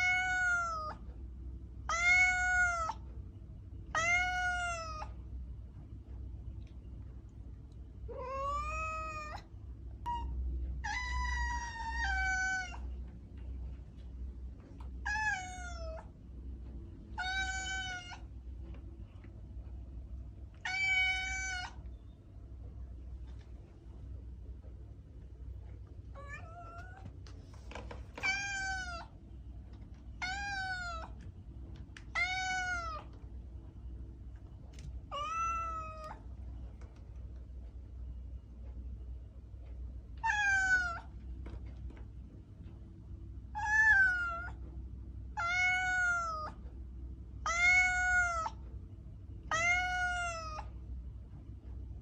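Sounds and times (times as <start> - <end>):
cat meowing: 0.0 - 1.0, 1.9 - 3.0, 3.9 - 5.2, 8.1 - 12.9, 15.0 - 16.1, 17.2 - 18.3, 20.6 - 21.8, 26.2 - 27.1, 28.2 - 29.2, 30.2 - 31.2, 32.1 - 33.2, 35.1 - 36.2, 40.2 - 41.1, 43.5 - 44.6, 45.4 - 46.6, 47.4 - 48.6, 49.5 - 50.7
low background rumble: 0.0 - 52.0
low hum: 0.0 - 52.0.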